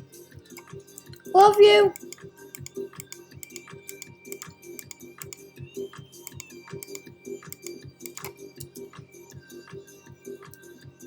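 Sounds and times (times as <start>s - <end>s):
quiet background music: 0.0s - 11.0s
computer keyboard typing: 1.4s - 5.4s, 6.3s - 8.3s.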